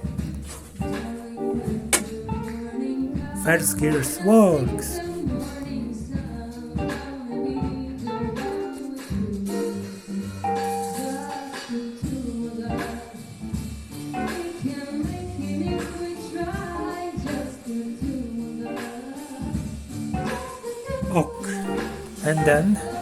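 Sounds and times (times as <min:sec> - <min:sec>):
person singing: 0:03.2 - 0:05.6, 0:21.1 - 0:23.0.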